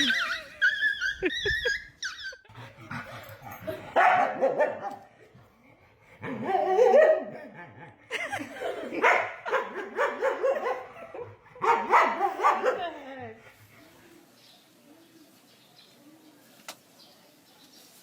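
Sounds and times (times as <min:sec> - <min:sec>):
dog barking: 0:04.0 - 0:05.0, 0:06.3 - 0:07.4, 0:09.0 - 0:12.9.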